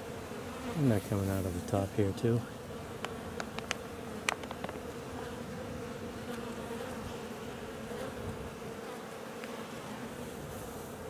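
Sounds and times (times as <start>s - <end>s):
bees buzzing: 0.0s - 11.0s
faint clicks: 3.0s - 4.8s.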